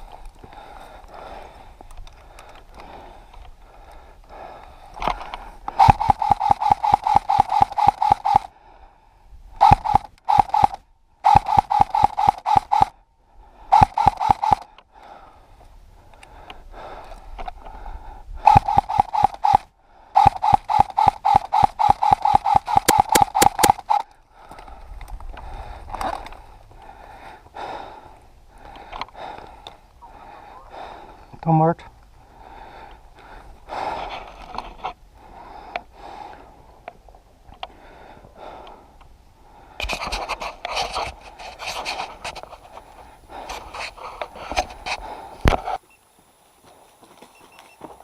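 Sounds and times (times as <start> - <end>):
airsoft rifle full-auto bursts: 5.8 - 8.5, 9.6 - 12.9, 13.7 - 14.7, 18.4 - 24.1.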